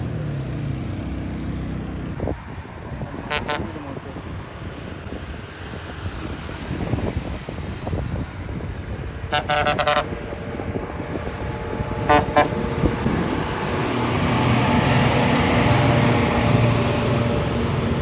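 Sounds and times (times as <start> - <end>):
road and engine noise: 0.0 - 18.0
bus horn blasts: 3.3 - 4.0, 9.3 - 10.2, 12.0 - 12.6.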